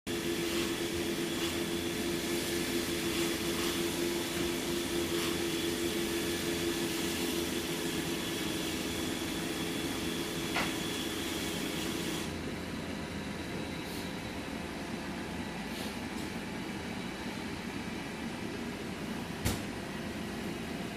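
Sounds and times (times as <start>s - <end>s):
robot vacuum humming: 0.1s - 12.5s.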